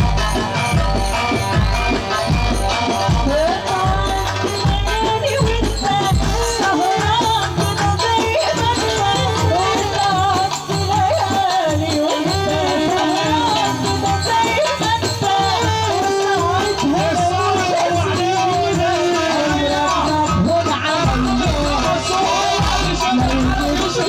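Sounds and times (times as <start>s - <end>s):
low drum beat: 0.0s - 11.0s, 21.0s - 24.0s
ornamented folk melody: 0.0s - 24.0s.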